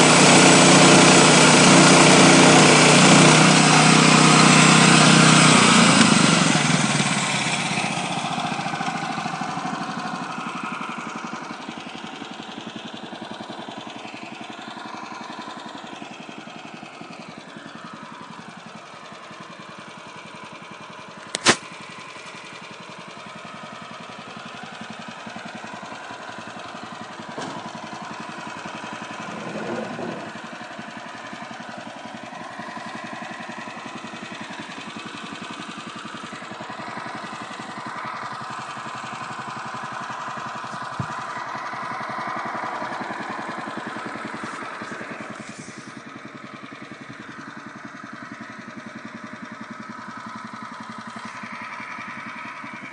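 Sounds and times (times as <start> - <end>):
gas engine running: 0.0 - 52.9
sharp click: 21.2 - 21.8.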